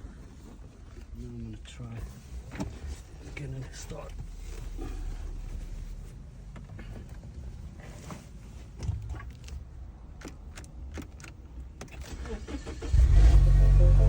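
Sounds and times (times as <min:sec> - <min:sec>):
car engine starting and running: 0:08.8 - 0:14.0.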